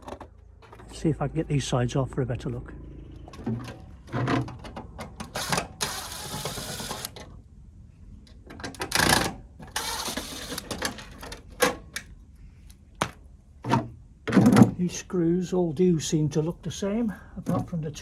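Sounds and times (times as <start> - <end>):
screwdriver whirring: 3.4 - 7.2, 8.8 - 10.8.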